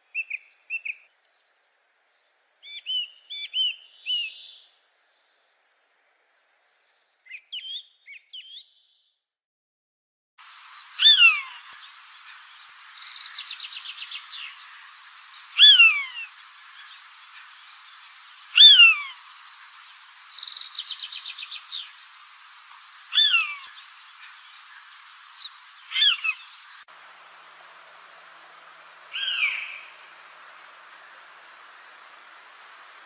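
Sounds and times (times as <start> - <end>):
bird whistled call sliding downward: 10.7 - 26.9, 29.1 - 30.1
bird rattling trill: 11.0 - 26.8.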